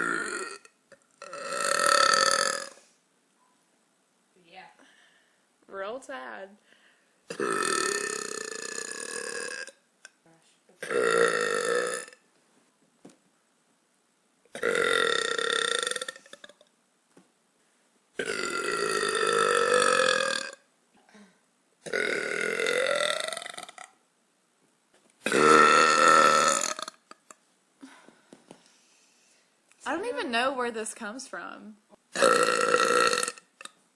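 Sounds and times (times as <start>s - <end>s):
woman belching: 0.0s - 2.8s, 7.3s - 9.8s, 10.8s - 12.2s, 14.5s - 16.6s, 18.2s - 20.6s, 21.8s - 24.0s, 25.2s - 27.4s, 32.1s - 33.8s.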